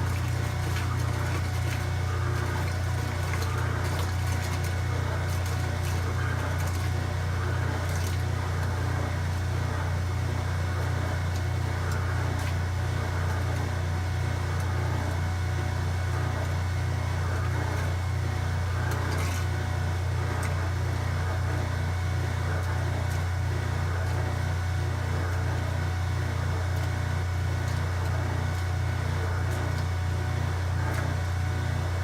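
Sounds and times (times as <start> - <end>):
water noise: 0.0 - 12.7
washing machine whirring hum: 0.0 - 32.0.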